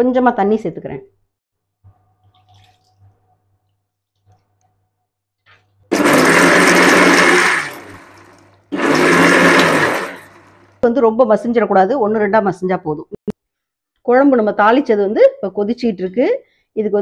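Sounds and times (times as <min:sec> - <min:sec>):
mixer grinder pulsing: 0:05.9 - 0:10.8.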